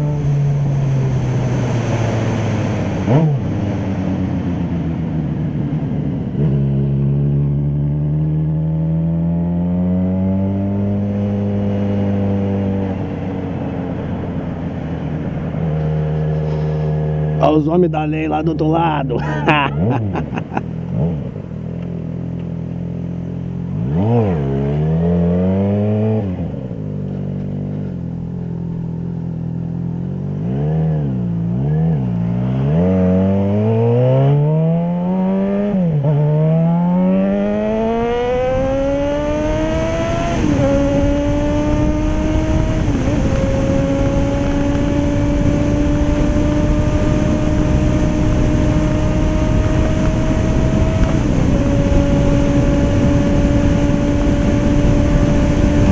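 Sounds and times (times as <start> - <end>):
wind rushing noise: 0.0 - 6.8, 37.4 - 55.9
motorcycle engine accelerating: 0.0 - 55.9.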